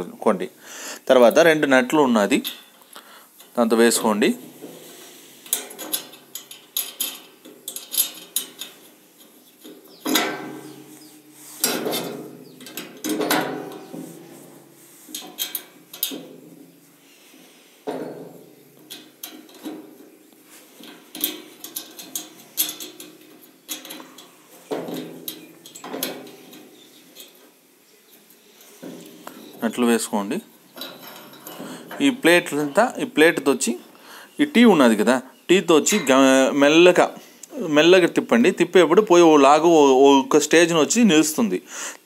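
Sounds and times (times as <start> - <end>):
metal parts clinking and scraping: 4.6 - 16.2, 20.8 - 27.4, 30.7 - 32.8.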